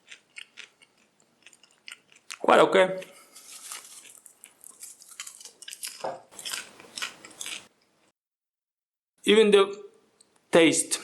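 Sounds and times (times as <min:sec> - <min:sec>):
person chewing popcorn: 0:00.0 - 0:08.1.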